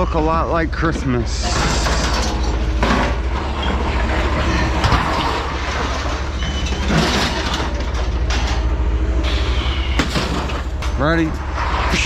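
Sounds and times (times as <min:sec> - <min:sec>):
engine humming: 0:00.0 - 0:12.0
scrap metal knocking and clanking: 0:00.5 - 0:12.0.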